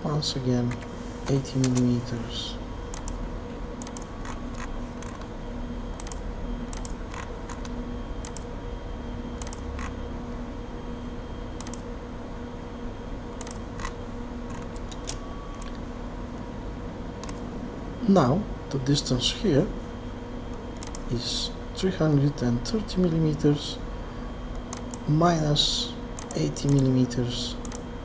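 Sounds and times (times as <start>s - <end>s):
low background hum: 0.0s - 28.0s
mouse and keyboard clicks: 3.8s - 5.3s, 6.0s - 8.5s, 13.4s - 15.8s, 17.2s - 17.4s, 20.8s - 21.1s, 26.2s - 26.9s.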